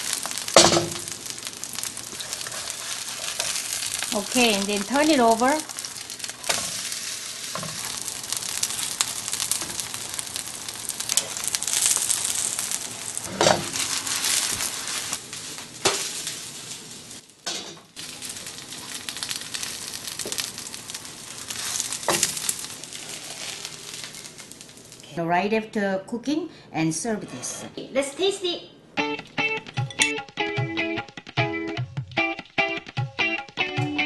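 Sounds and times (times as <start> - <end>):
pancake sizzling in oil: 0.0 - 25.0.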